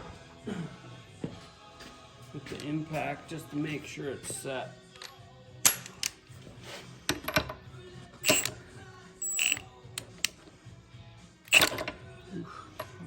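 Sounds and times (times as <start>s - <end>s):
impact wrench bursts: 8.2s - 8.5s, 9.2s - 10.2s, 11.5s - 11.8s.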